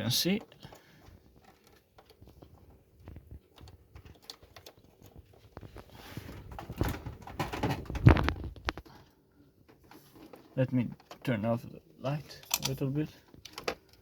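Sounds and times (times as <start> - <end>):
multimeter leads clicking and knocking: 0.2 - 9.0, 12.3 - 14.0.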